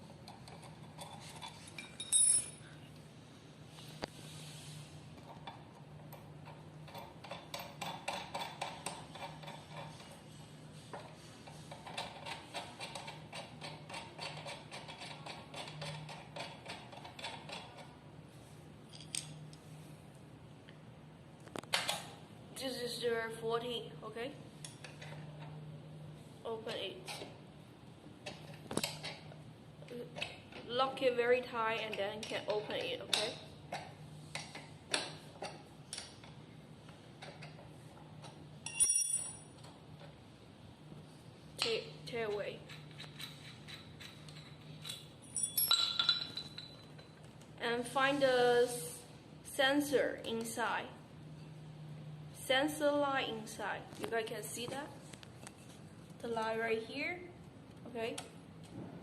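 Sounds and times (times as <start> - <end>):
faint steady hum: 0.0 - 59.0
metallic clink: 1.8 - 2.7, 38.6 - 39.6, 43.2 - 47.2.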